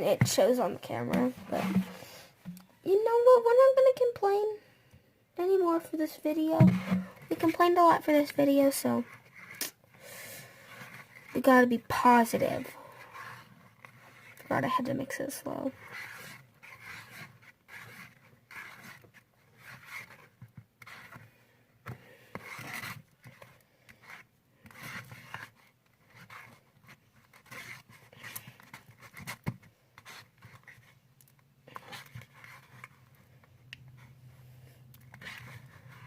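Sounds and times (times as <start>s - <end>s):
slime scraping in a bowl: 0.2s - 2.2s, 10.6s - 21.2s.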